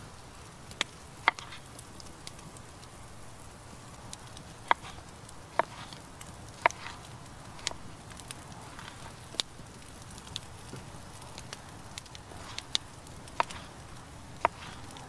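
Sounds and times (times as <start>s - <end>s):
campfire crackling: 0.0s - 15.0s
sharp fire pops: 0.0s - 15.0s.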